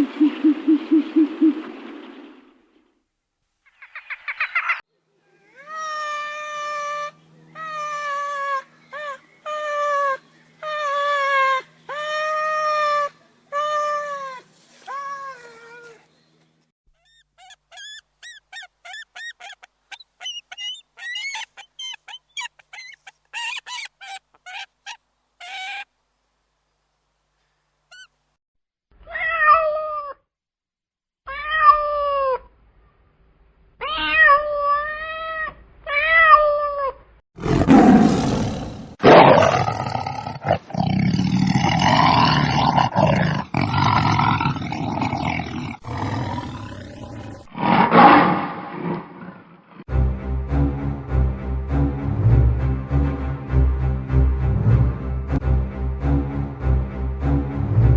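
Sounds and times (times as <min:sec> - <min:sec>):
cat meowing: 0:29.0 - 0:30.2, 0:31.3 - 0:32.5, 0:33.8 - 0:37.0
loud rough animal call: 0:37.4 - 0:49.6.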